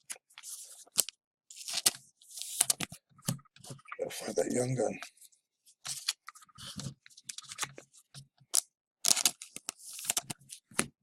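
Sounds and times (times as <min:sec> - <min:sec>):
cards and wrapper crinkling: 0:00.4 - 0:02.9, 0:05.9 - 0:07.8, 0:09.1 - 0:10.8.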